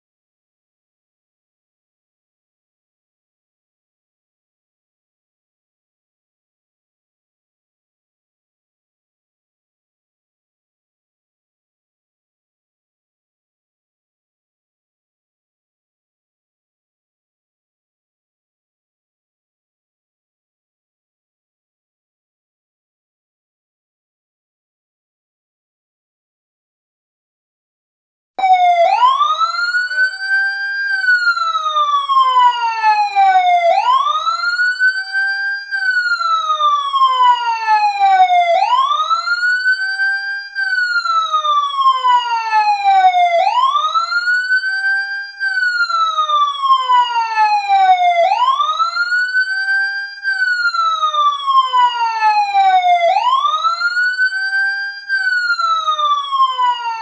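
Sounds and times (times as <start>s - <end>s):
fire truck siren wailing: 28.4s - 57.0s.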